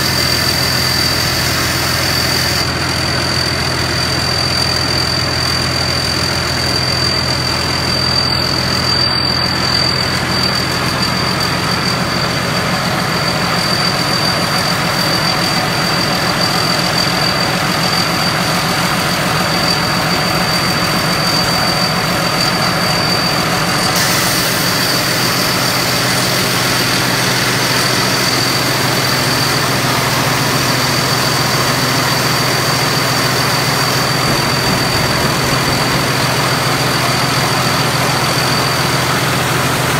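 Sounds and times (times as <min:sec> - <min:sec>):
diesel engine running: 0:00.0 - 0:39.9
high whine: 0:00.0 - 0:39.9
high hiss: 0:07.8 - 0:38.5.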